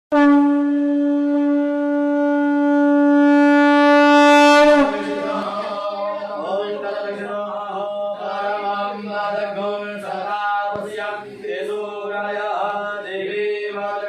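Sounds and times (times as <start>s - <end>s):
conch shell blown: 0.1s - 6.5s
chanting: 4.8s - 14.0s.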